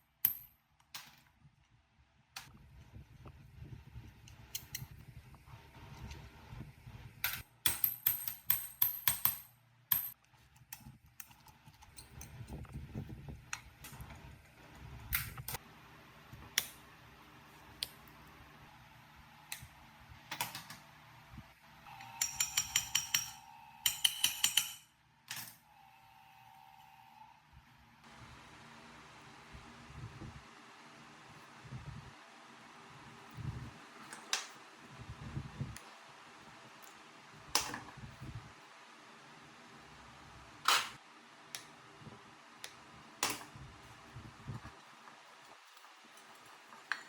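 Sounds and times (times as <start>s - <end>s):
metallic clicks and taps: 22.2s - 25.5s.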